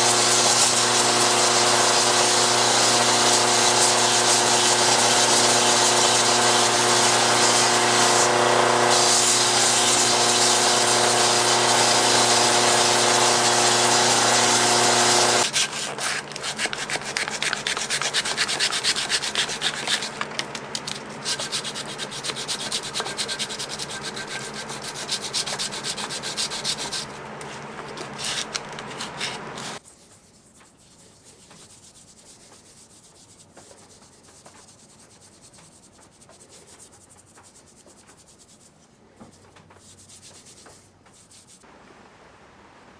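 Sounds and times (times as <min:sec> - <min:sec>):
electric power tool motor hum: 0:00.0 - 0:15.5, 0:22.6 - 0:29.8
hand-sanding strokes: 0:00.0 - 0:41.6.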